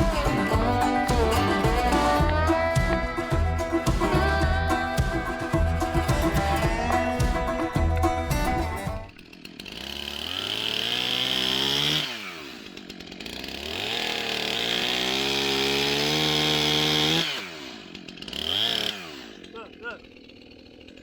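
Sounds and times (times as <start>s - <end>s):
chainsaw engine revving: 0.0s - 21.0s.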